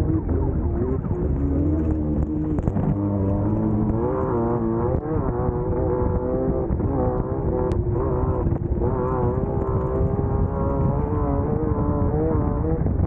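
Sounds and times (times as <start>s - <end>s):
buggy engine running hard: 0.0s - 13.0s
rattle from rough ground: 0.4s - 5.6s.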